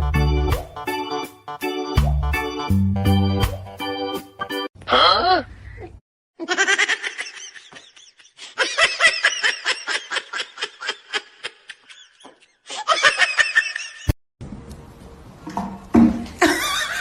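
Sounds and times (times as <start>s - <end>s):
high-pitched laughter: 6.4s - 14.1s.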